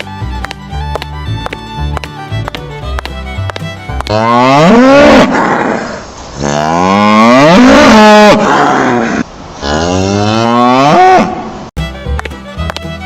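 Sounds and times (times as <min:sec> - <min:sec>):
cow mooing: 0:04.1 - 0:11.5.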